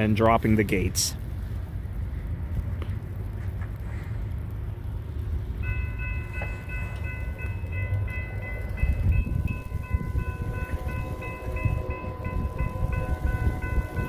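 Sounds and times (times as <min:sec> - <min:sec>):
low rumble: 0:00.0 - 0:14.0
crossing warning bell dinging: 0:05.4 - 0:14.0.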